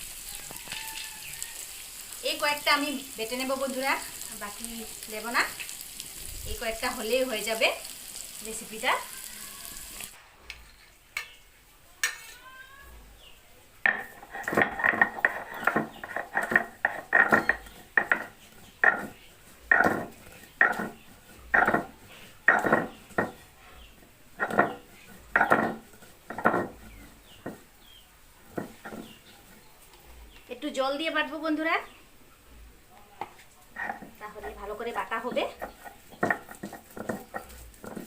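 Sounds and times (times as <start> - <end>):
nuts being pounded: 13.9 - 23.5, 24.4 - 27.8, 28.5 - 29.2, 35.2 - 38.0.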